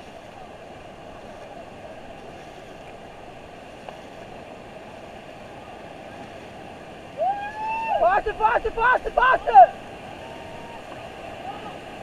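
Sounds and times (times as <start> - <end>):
river water rushing: 0.0 - 12.0.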